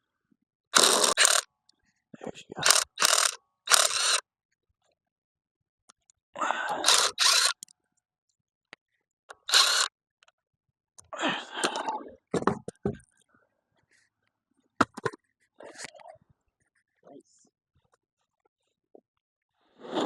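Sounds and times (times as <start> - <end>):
sharp clicks: 0.8 - 1.5, 2.6 - 4.2, 6.8 - 7.7.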